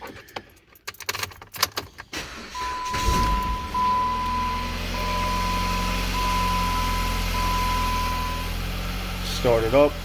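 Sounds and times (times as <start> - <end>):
car engine starting and idling: 1.4 - 10.0
dashboard warning chime beeping: 2.4 - 8.6.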